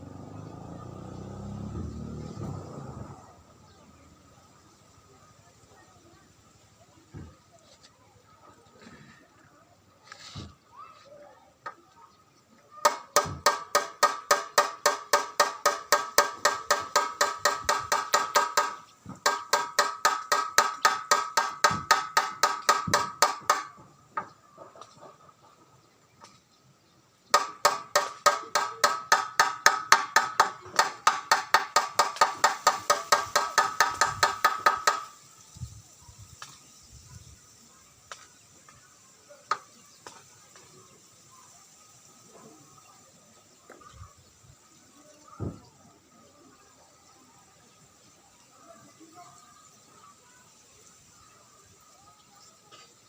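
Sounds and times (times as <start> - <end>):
rapid hammering on metal: 12.8 - 24.3, 27.3 - 35.2.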